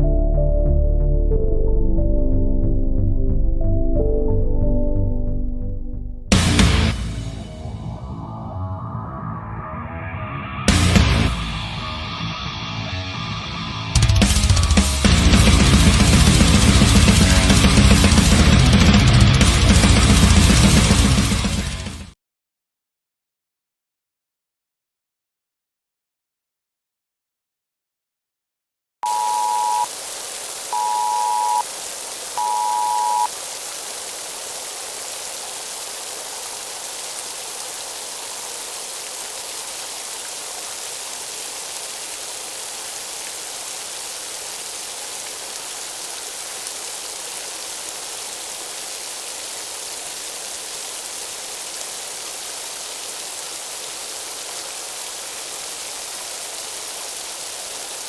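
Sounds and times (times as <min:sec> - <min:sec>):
two-tone alert beeps: 0:29.0 - 0:29.9, 0:30.8 - 0:31.6, 0:32.4 - 0:33.3
static hiss: 0:29.0 - 0:58.0.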